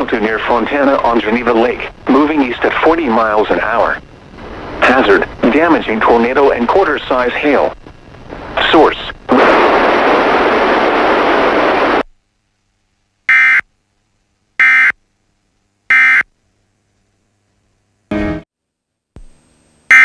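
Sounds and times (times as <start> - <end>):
static hiss: 0.0 - 12.7, 19.2 - 20.0.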